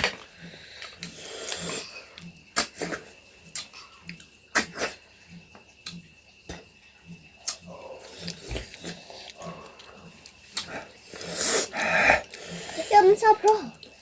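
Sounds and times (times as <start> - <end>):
snails being sucked from shells: 0.4 - 3.2, 7.3 - 13.7.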